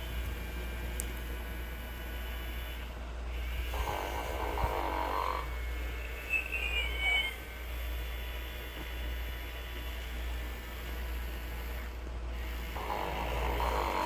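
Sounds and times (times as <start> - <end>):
steady low hum: 0.0 - 14.0
toy playing recorded snore: 3.7 - 7.4, 12.5 - 14.0
short whistle: 6.0 - 7.4.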